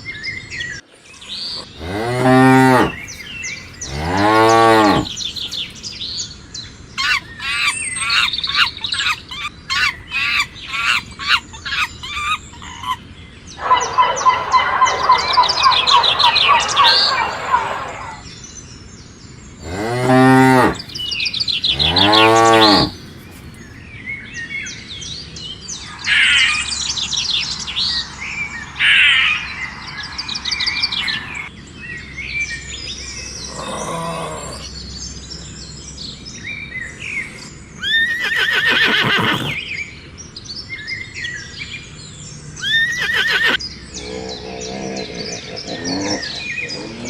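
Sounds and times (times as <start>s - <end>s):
birds chirping and calling: 0.6s - 18.5s, 19.5s - 23.9s, 24.6s - 40.0s, 40.6s - 47.0s
loud animal calls: 1.4s - 5.6s, 7.0s - 18.3s, 19.6s - 23.5s, 25.7s - 31.5s, 33.0s - 34.8s, 37.0s - 39.6s, 42.6s - 47.0s.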